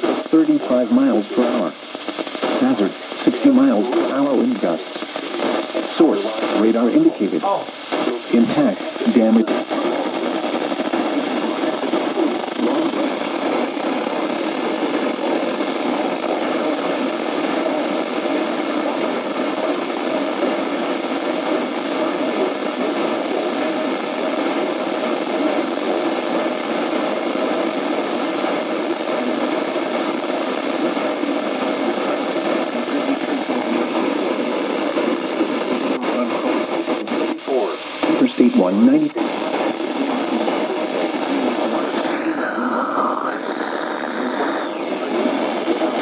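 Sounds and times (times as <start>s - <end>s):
radio static hiss: 0.0s - 46.0s.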